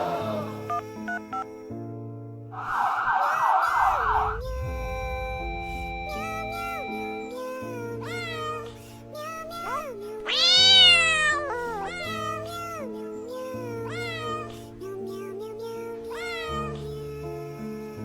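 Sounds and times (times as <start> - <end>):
background music: 0.0 - 18.0
cat meowing: 8.0 - 12.9, 13.7 - 14.6, 16.1 - 16.9.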